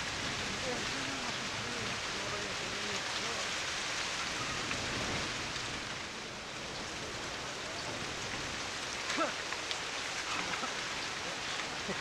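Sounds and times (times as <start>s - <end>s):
outdoor hiss: 0.0s - 12.0s.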